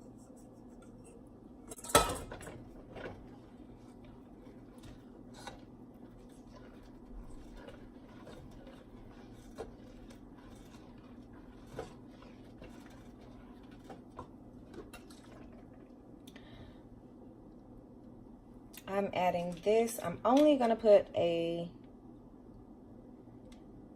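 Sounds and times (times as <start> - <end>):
low steady hum: 0.0 - 23.9
utensils and dishes clinking: 1.7 - 2.6.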